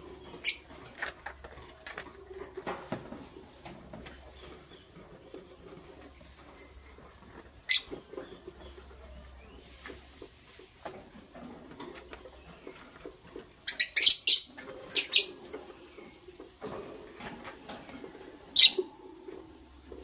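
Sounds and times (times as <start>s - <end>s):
faint rustling and scratching: 0.0s - 20.0s
lovebirds shrill chirps: 7.7s - 8.0s, 13.6s - 15.4s, 18.6s - 18.8s.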